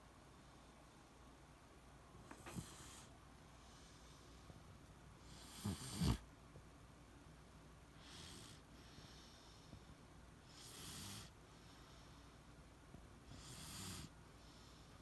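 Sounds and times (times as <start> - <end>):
dog snoring breaths: 2.3 - 4.4, 5.2 - 6.2, 8.0 - 12.4, 13.2 - 15.0.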